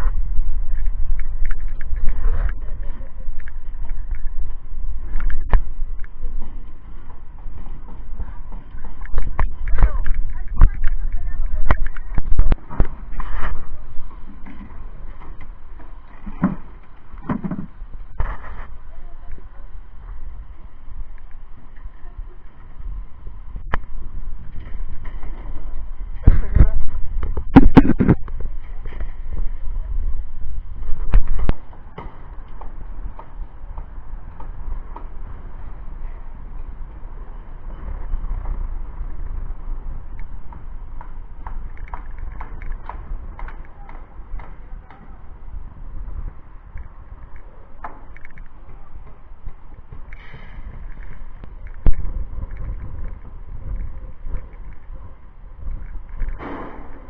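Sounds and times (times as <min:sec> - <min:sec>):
wind rumble on microphone: 0:00.0 - 0:57.0.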